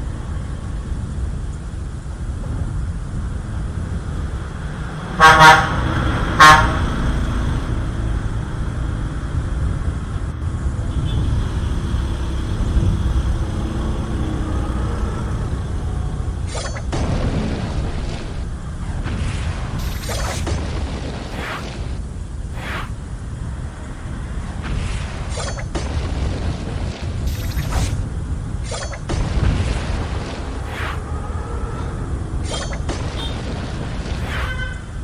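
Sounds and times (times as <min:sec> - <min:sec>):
horn honks: 0:05.2 - 0:06.9, 0:33.2 - 0:33.4
steady low rumble: 0:15.4 - 0:35.0.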